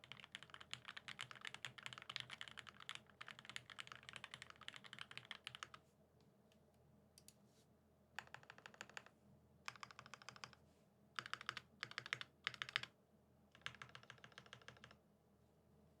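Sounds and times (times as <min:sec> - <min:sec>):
typing on mechanical keyboard: 0:00.0 - 0:05.8, 0:08.2 - 0:09.1, 0:09.7 - 0:10.6, 0:11.2 - 0:12.9, 0:13.6 - 0:15.0.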